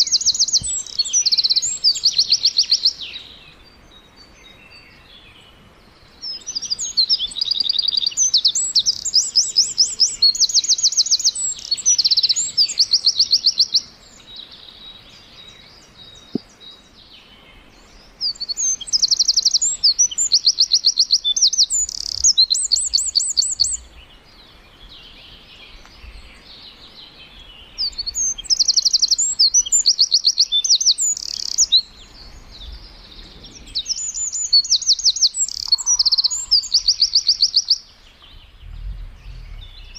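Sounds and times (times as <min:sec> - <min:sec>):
bird singing high trills: 0:17.9 - 0:23.9, 0:27.6 - 0:39.9.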